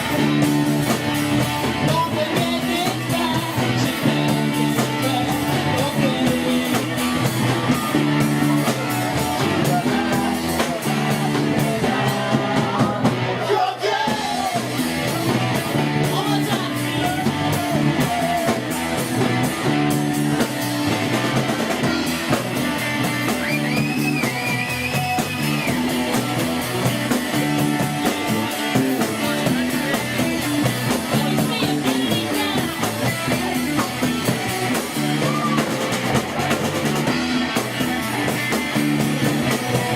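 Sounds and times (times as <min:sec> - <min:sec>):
bass guitar: 0:00.0 - 0:39.9
drums: 0:00.0 - 0:39.9
electric guitar: 0:00.0 - 0:39.9
person singing: 0:01.6 - 0:19.0, 0:28.3 - 0:35.9.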